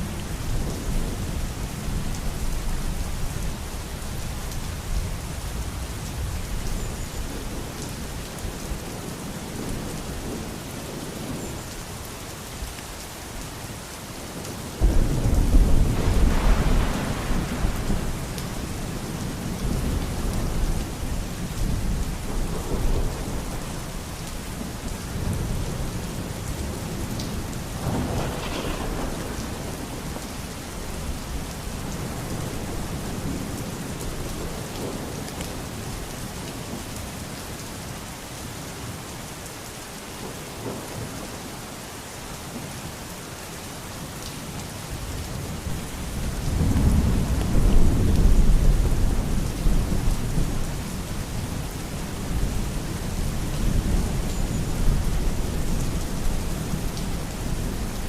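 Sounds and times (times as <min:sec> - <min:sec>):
steady rain falling: 0:00.0 - 0:58.0
loud low thunderclap: 0:14.8 - 0:18.8, 0:27.8 - 0:30.2
thunder rumbling: 0:14.8 - 0:23.8, 0:27.7 - 0:35.0, 0:45.4 - 0:58.0.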